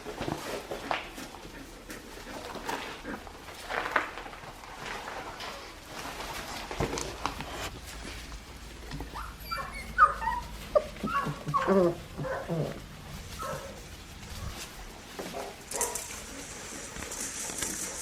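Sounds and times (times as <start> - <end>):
puppies whimpering and yipping: 8.7 - 18.0.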